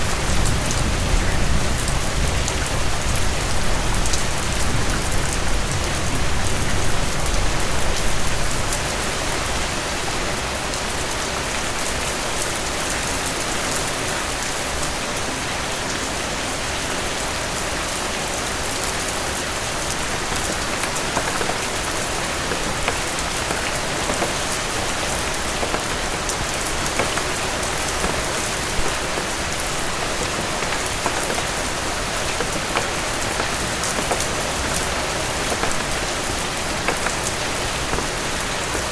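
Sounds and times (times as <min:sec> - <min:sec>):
steady rain falling: 0:00.0 - 0:38.9
raindrops ticking: 0:18.8 - 0:38.9.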